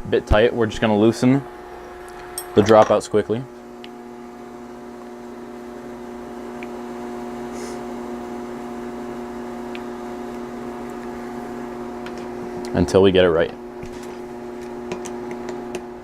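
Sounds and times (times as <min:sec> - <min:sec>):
steady hum of held pitches: 0:00.0 - 0:07.4.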